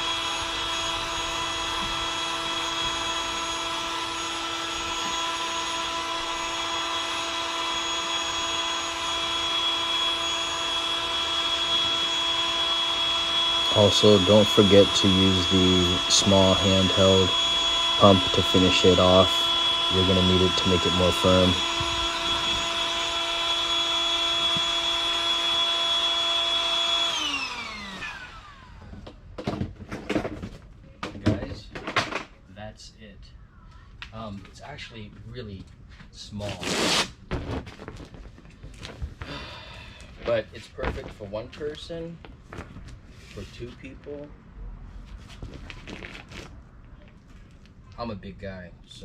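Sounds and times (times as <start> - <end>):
electric air pump whining: 0.0 - 29.2.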